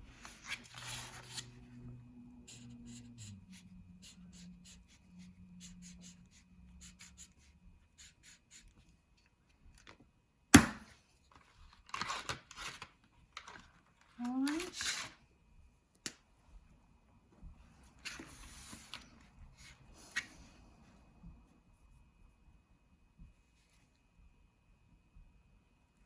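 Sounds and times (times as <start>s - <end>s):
coloring tool scribbling on paper: 2.4s - 8.8s.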